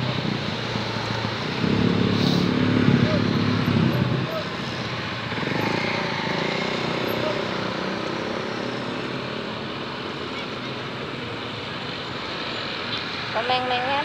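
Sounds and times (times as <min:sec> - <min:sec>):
passing vehicle engine hum: 0:00.0 - 0:10.0
steady traffic rumble: 0:00.0 - 0:14.0.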